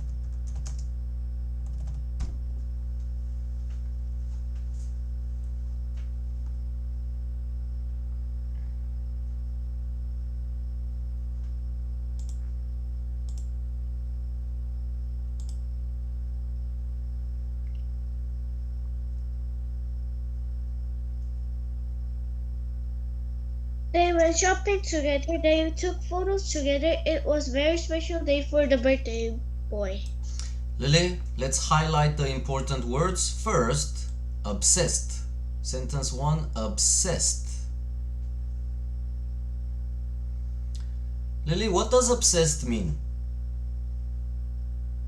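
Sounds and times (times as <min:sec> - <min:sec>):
computer keyboard clicks: 0:00.0 - 0:00.9, 0:01.6 - 0:02.4, 0:12.2 - 0:12.4
electrical mains hum: 0:00.0 - 0:45.0.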